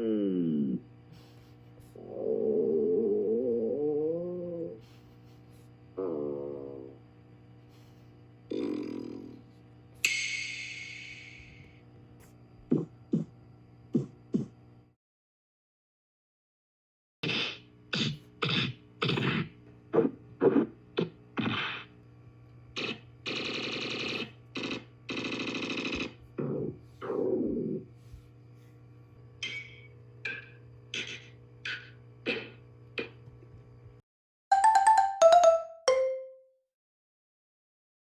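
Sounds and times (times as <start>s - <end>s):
loud tones falling in pitch: 34.5s - 36.4s.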